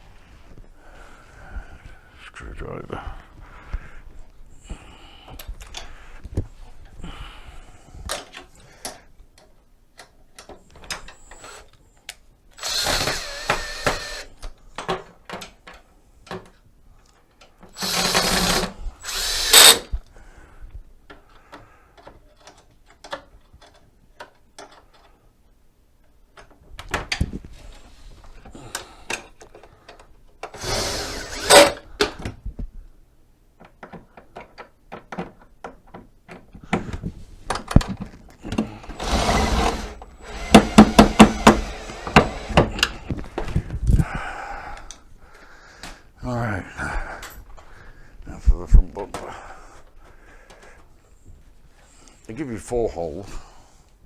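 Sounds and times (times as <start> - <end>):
parts clicking and knocking: 8.1 - 16.6, 17.3 - 19.9, 37.5 - 43.6
power driver running: 12.6 - 14.3, 17.8 - 19.9, 30.6 - 31.8, 38.8 - 42.9.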